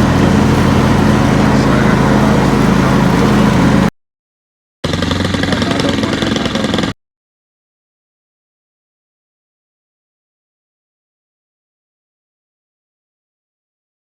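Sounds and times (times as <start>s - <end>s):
engine running: 0.0s - 3.9s, 4.8s - 7.0s.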